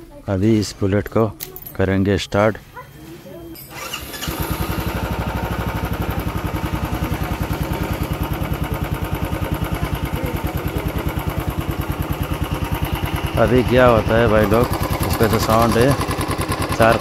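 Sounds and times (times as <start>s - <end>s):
motorcycle engine idling: 3.7s - 17.0s.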